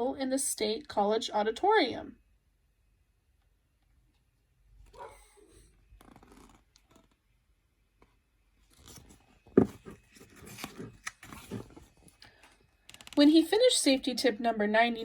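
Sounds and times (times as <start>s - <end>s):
book pages rustling: 8.6s - 13.2s.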